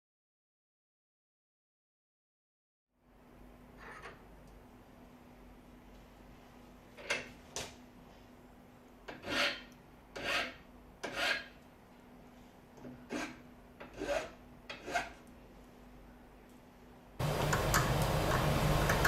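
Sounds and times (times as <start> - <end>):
hand file rasping on metal: 9.1 - 11.6, 13.1 - 15.2.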